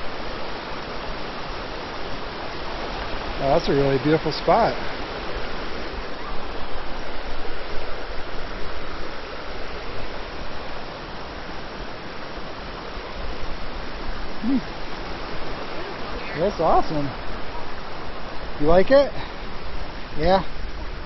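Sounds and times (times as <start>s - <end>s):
stream water flowing: 0.0s - 21.0s
short voice sound: 14.4s - 14.7s.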